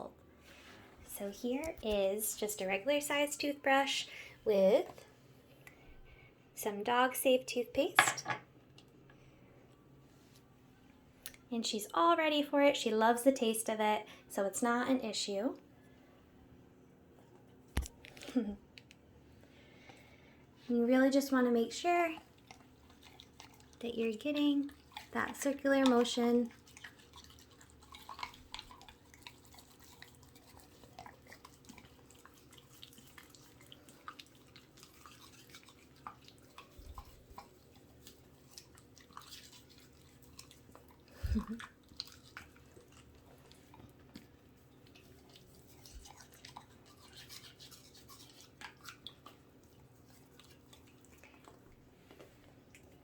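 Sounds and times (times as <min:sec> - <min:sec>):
toothbrush scrubbing teeth: 0:21.1 - 0:52.4.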